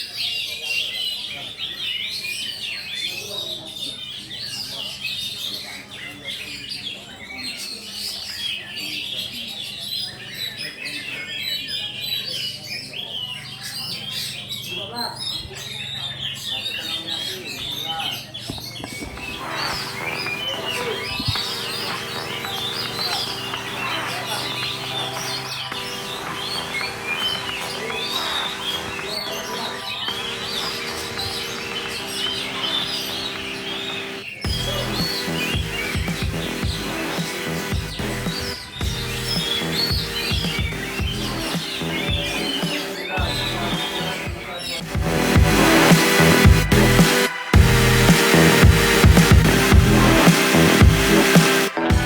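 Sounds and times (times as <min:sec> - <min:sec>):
birds whistling and chirping: 0:00.0 - 0:23.6
songbirds chirping and whistling: 0:00.0 - 0:52.0.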